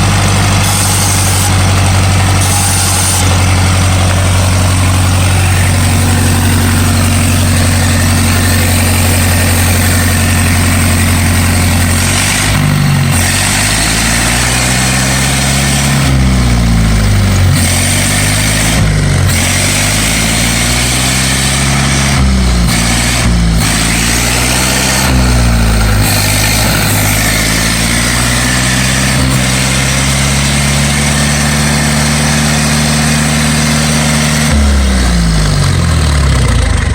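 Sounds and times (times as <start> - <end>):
steam engine running: 0.0 - 36.9
steady steam hiss: 0.8 - 11.5.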